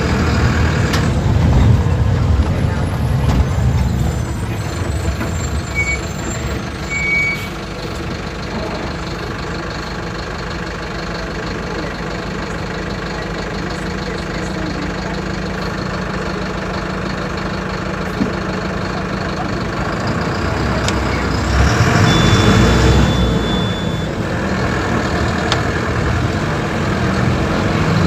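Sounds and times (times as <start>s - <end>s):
diesel bus engine running: 0.0s - 28.0s
short high beeps: 21.7s - 24.2s.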